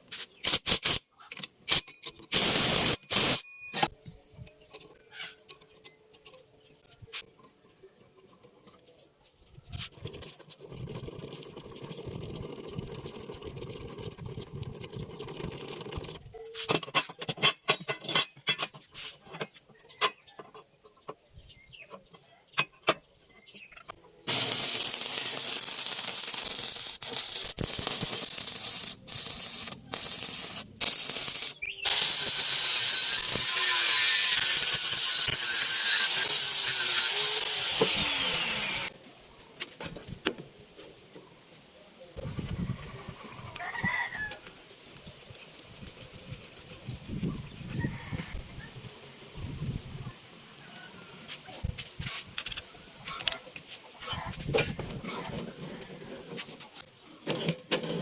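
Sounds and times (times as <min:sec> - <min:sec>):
angle grinder cutting steel: 0:01.7 - 0:03.9, 0:24.3 - 0:39.0.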